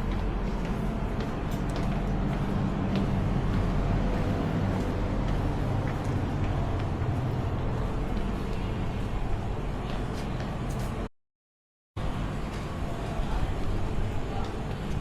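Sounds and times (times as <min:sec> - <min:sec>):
engine low rumble: 0:00.0 - 0:11.1.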